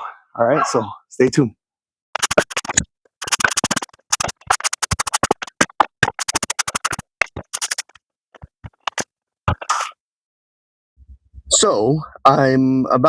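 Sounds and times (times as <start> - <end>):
record scratching: 2.2 - 9.9.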